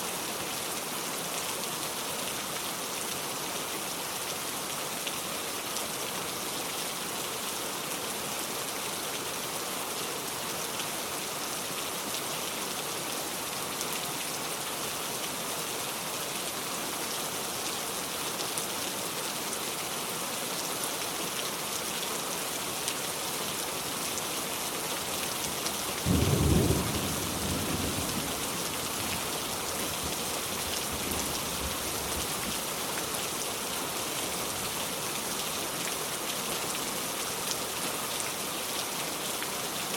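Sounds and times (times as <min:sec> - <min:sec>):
heavy rain hissing: 0:25.0 - 0:33.4.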